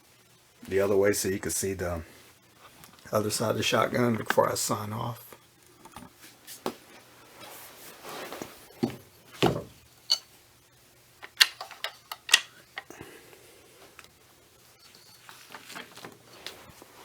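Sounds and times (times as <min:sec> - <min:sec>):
rustling: 0:06.2 - 0:10.3, 0:13.8 - 0:17.0
shotgun handling clicks and knocks: 0:11.2 - 0:12.9.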